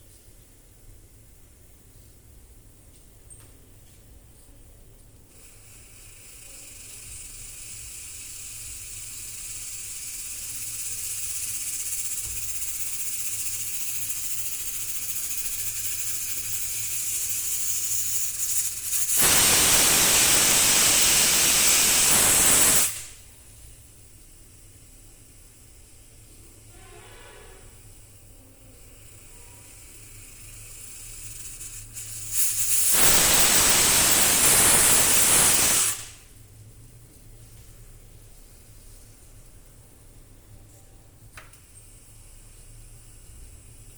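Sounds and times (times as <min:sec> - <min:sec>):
pressure cooker hissing: 0:05.3 - 0:36.4, 0:41.4 - 0:43.9
steam whistle blast: 0:26.6 - 0:27.9.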